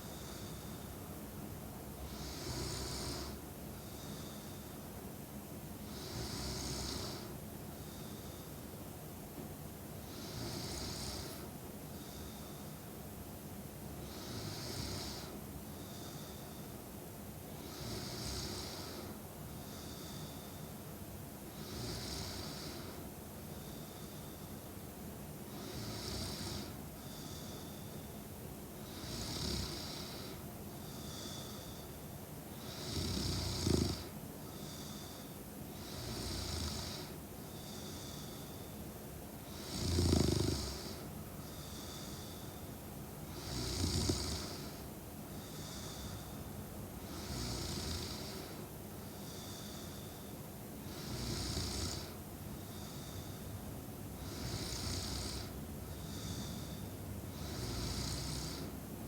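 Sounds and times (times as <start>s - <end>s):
woman snoring: 2.0s - 3.4s, 5.9s - 7.4s, 10.1s - 11.5s, 14.0s - 15.4s, 17.6s - 19.2s, 21.5s - 23.0s, 25.5s - 27.6s, 28.8s - 30.4s, 32.6s - 38.6s, 39.5s - 42.6s, 43.3s - 46.4s, 47.0s - 50.3s, 50.9s - 53.4s, 54.2s - 58.8s.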